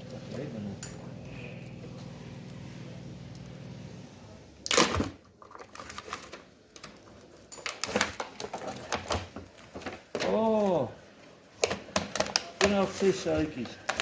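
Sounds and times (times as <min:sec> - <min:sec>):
low electric hum: 0:00.0 - 0:11.5
clatter of small hard parts: 0:04.7 - 0:10.7, 0:11.6 - 0:14.0.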